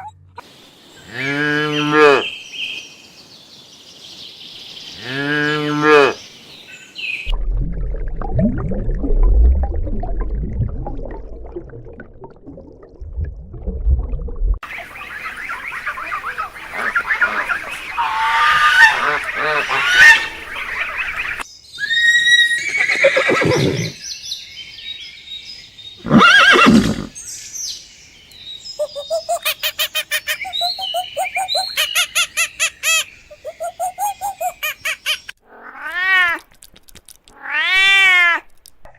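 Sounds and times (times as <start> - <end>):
low rumble: 7.3 - 14.6
chorus of bird calls: 14.6 - 23.9, 28.3 - 35.4
loud farm animal calls: 14.9 - 23.8.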